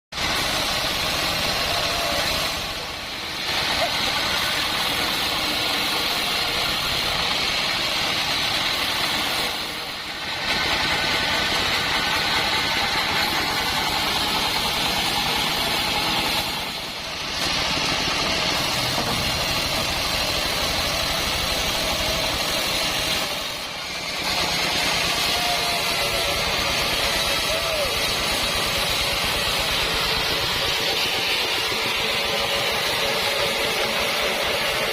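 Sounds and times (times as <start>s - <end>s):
band sawmill running: 0.1s - 34.9s.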